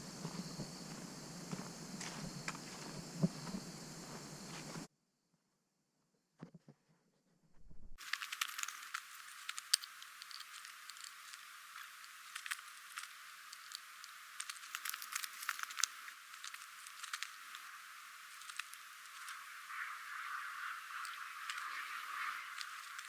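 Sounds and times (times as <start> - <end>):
footsteps on woodland trail: 0.0 - 4.9
faint steady hiss: 7.9 - 23.0.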